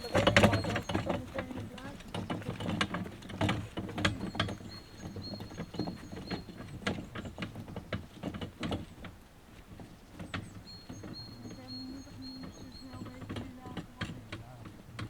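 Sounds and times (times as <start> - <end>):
bird chirping: 4.0 - 7.4, 9.9 - 14.0.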